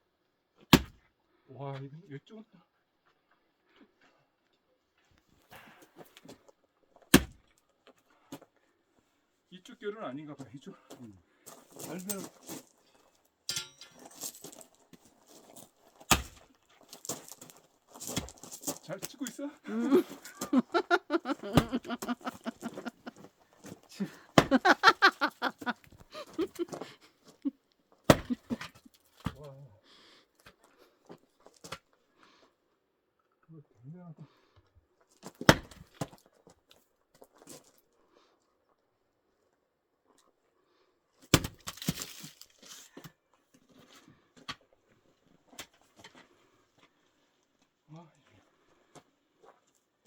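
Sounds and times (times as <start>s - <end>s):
axe striking log: 0.7s - 1.0s, 7.1s - 7.4s, 16.1s - 16.4s, 24.4s - 24.6s, 28.1s - 28.4s, 35.5s - 35.8s, 41.4s - 41.9s.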